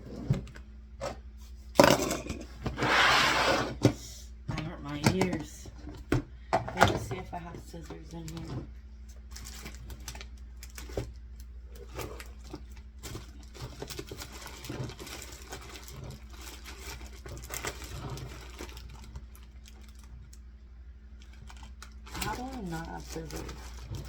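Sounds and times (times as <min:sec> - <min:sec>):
steady low hum: 0:00.0 - 0:24.0
rummaging small items clattering: 0:04.6 - 0:20.4, 0:21.2 - 0:24.0.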